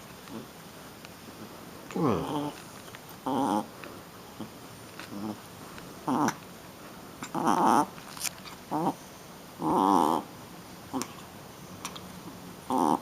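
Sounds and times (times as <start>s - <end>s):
puppy vocalizing: 1.9s - 2.6s, 3.2s - 3.7s, 6.0s - 6.4s, 7.2s - 8.0s, 8.7s - 9.0s, 9.6s - 10.3s, 12.7s - 13.0s.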